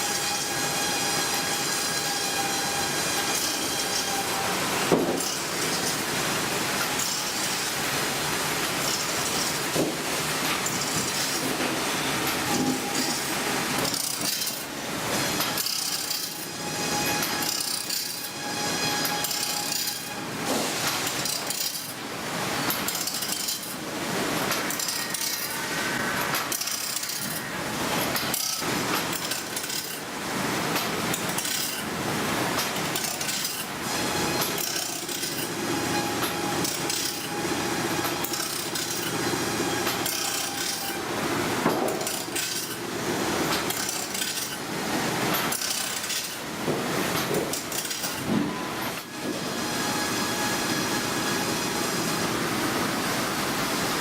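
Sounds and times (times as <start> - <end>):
blade sharpener grinding: 15.4 - 20.2, 24.6 - 25.7, 26.4 - 27.5, 34.3 - 37.4, 38.0 - 41.0, 41.9 - 42.8, 43.6 - 44.6
grinding wheel hiss: 32.7 - 41.1.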